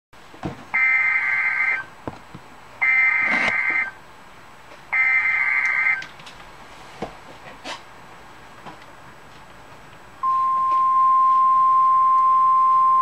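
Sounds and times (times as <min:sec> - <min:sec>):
receiver hiss: 0:02.8 - 0:04.0
static crackles: 0:02.8 - 0:04.0.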